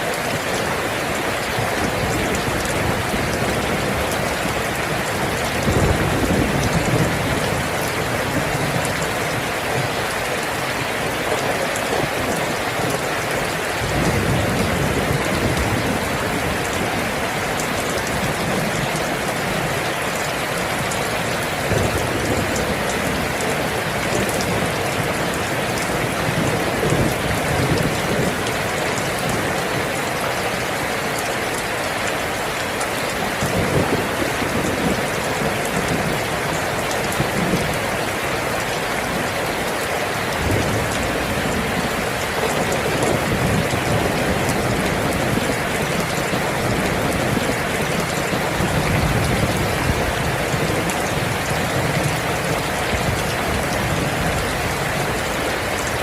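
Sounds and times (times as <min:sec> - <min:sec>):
heavy rain: 0:00.0 - 0:56.0.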